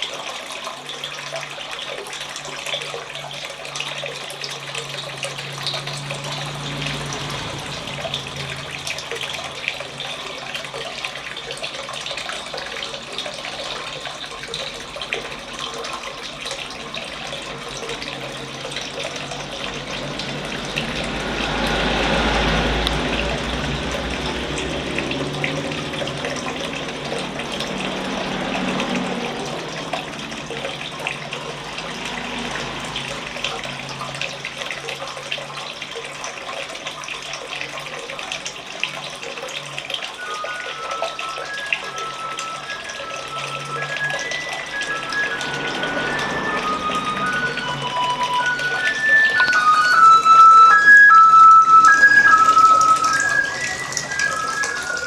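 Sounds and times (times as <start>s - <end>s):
fountain water splashing: 0.0s - 55.0s.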